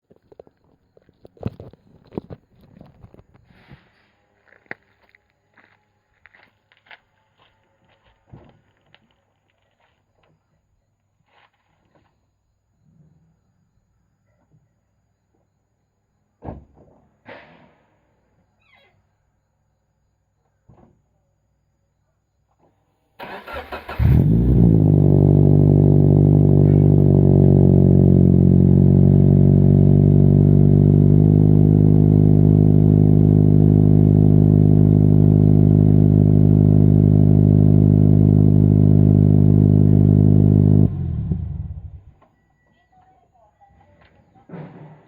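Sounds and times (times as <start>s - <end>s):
car engine idling: 23.2s - 42.1s.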